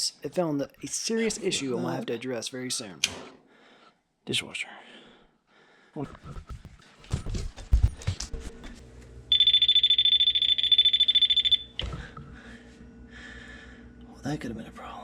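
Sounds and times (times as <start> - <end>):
high-pitched pulsing beep: 9.3 - 11.7.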